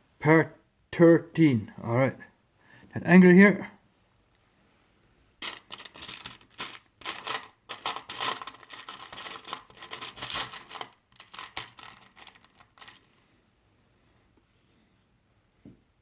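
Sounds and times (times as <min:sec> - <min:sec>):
plastic pieces clattering and clicking: 0:05.4 - 0:13.1.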